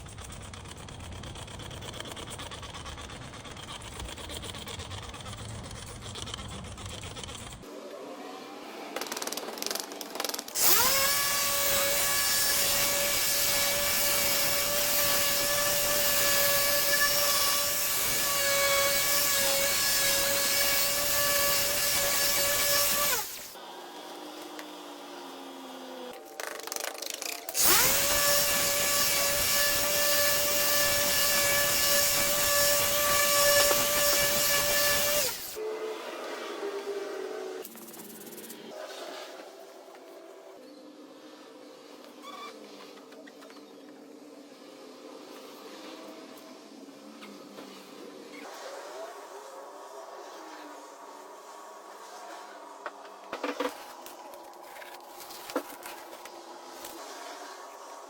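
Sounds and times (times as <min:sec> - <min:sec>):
electric drill whining: 0:10.6 - 0:23.6, 0:27.6 - 0:35.6.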